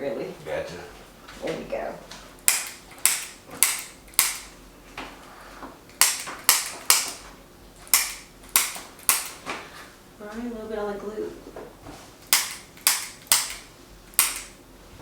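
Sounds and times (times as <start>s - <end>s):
spring-loaded instrument clicks: 2.4s - 4.5s, 12.3s - 14.6s.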